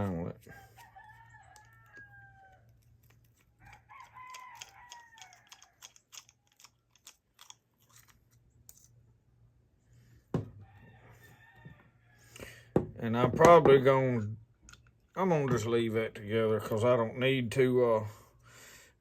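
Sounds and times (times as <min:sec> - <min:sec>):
rooster crowing: 0:00.5 - 0:02.7, 0:03.6 - 0:05.9, 0:10.6 - 0:12.6
knock: 0:10.3 - 0:10.6.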